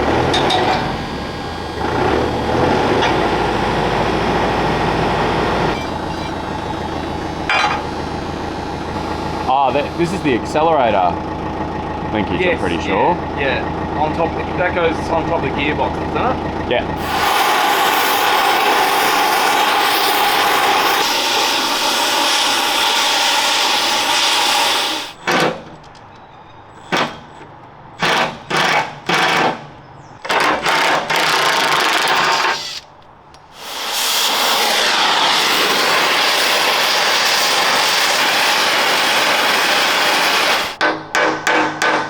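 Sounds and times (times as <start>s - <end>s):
power tool on bolts: 0.0s - 11.0s, 17.0s - 25.5s, 28.0s - 40.8s.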